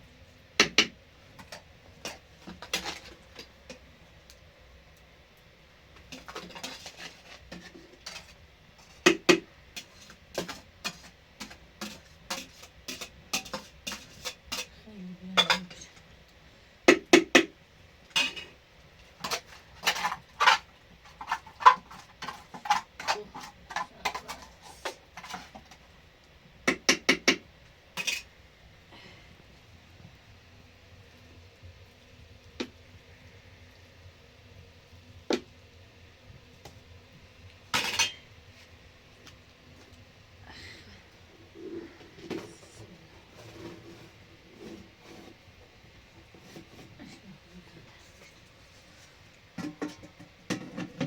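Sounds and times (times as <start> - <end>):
pots and dishes clattering: 0.6 - 3.8, 6.0 - 14.7, 15.4 - 16.0, 16.9 - 17.5, 18.1 - 25.8, 26.6 - 27.4, 28.0 - 28.3, 37.7 - 38.3, 49.6 - 51.0.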